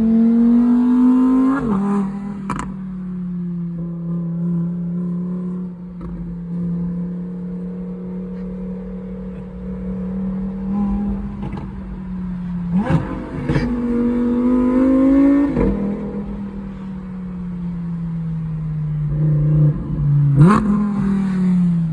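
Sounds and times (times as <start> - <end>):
car engine revving: 0.0 - 21.9.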